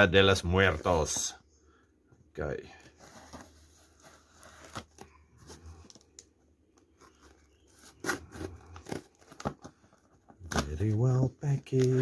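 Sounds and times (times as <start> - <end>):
packaging crackling and crinkling: 3.0 - 12.0.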